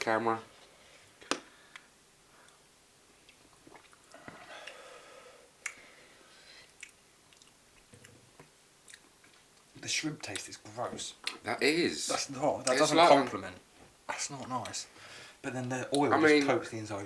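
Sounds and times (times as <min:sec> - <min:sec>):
person chewing: 0:03.2 - 0:04.9, 0:06.6 - 0:09.7.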